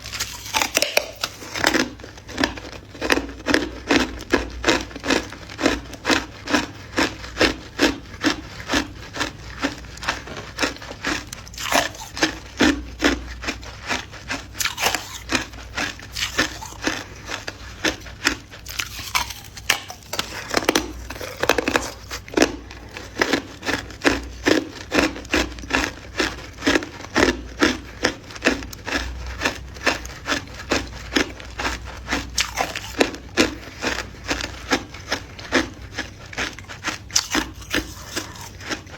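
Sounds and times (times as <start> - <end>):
person chewing ice: 0.0 - 38.9.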